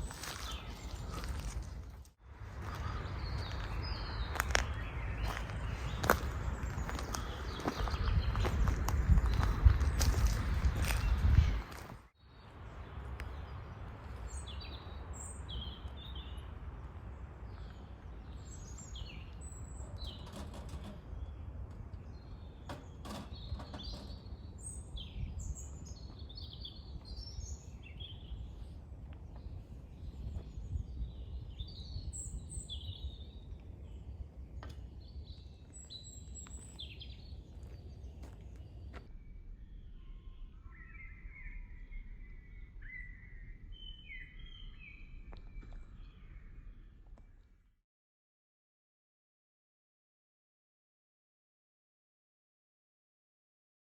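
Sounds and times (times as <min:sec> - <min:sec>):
small birds chirping: 0:00.0 - 0:47.6.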